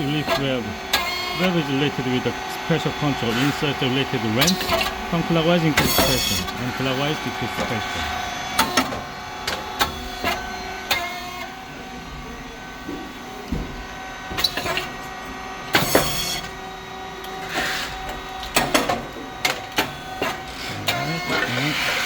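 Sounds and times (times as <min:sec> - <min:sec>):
machine motor and pump hum: 0:00.0 - 0:22.0
sharp mechanical clicks and knocks: 0:04.4 - 0:05.0, 0:05.7 - 0:06.6, 0:08.6 - 0:11.2, 0:14.3 - 0:15.0, 0:15.7 - 0:16.6, 0:18.1 - 0:21.6.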